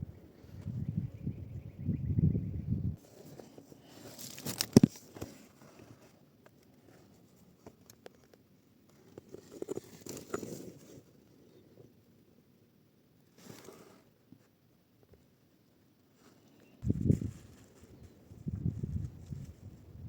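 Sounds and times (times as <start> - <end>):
rustling and crinkling: 3.0 - 11.9, 16.0 - 20.0.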